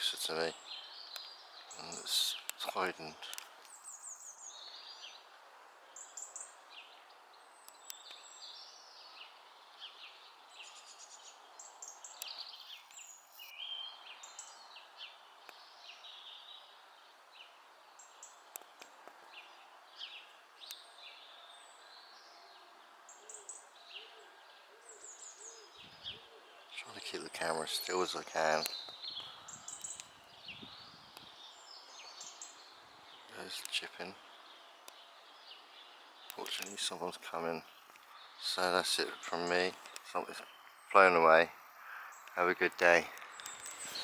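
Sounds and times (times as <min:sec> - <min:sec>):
small birds chirping: 0:00.0 - 0:44.0
sharp clicks: 0:01.1 - 0:03.8, 0:18.5 - 0:19.3, 0:27.4 - 0:30.4, 0:33.5 - 0:34.1, 0:36.2 - 0:44.0.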